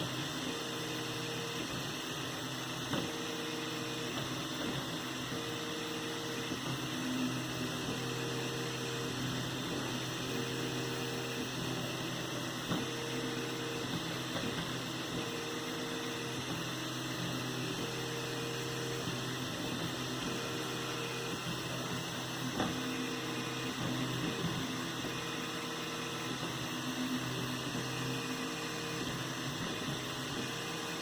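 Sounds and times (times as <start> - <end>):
three d printer humming: 0.0 - 31.0.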